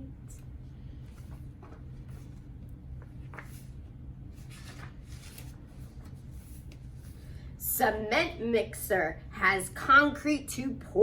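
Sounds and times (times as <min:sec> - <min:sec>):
steady low hum: 0:00.0 - 0:11.0
book pages turning: 0:00.9 - 0:07.2.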